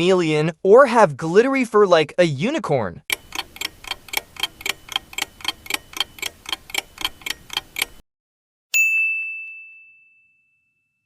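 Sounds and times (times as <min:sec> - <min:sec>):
clock ticking: 0:03.1 - 0:08.0
bright ding: 0:08.8 - 0:11.0.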